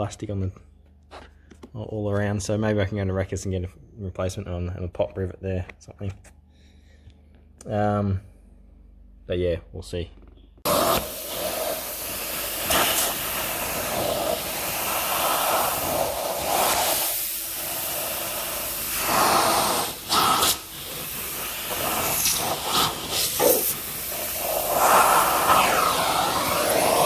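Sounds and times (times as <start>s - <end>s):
loud rushing air hiss: 10.7s - 27.0s.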